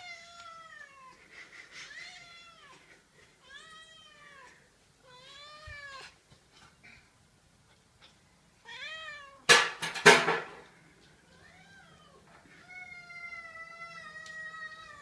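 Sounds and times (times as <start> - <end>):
cat meowing: 8.6 - 9.5, 11.3 - 15.0.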